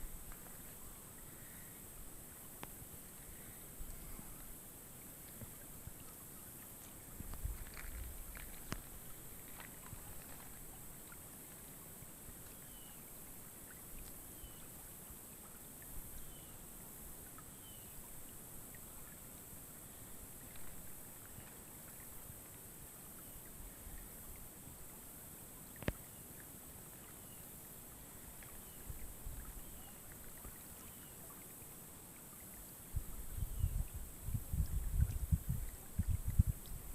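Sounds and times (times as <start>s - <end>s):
river water flowing: 0.0s - 33.2s
wind gusts on microphone: 32.9s - 36.9s.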